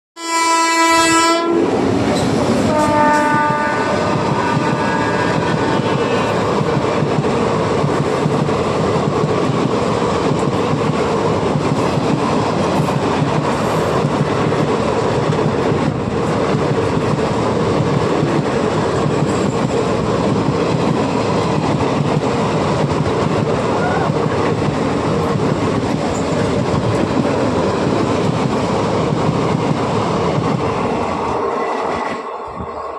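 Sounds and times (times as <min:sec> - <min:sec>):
train horn blast: 0:00.2 - 0:01.7, 0:02.6 - 0:06.5
train passing at speed: 0:00.2 - 0:32.9.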